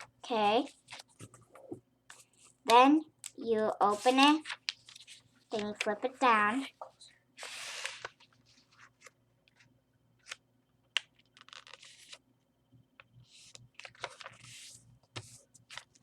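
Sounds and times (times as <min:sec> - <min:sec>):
paper rustling: 0:00.6 - 0:02.6, 0:03.8 - 0:10.4, 0:11.2 - 0:12.2, 0:13.3 - 0:16.0
paper being folded and creased: 0:03.8 - 0:06.7, 0:07.4 - 0:10.4, 0:11.2 - 0:12.2, 0:13.2 - 0:16.0.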